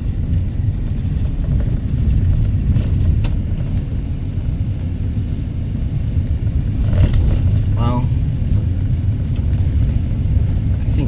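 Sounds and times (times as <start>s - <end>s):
car engine and tyre rumble: 0.0s - 11.0s.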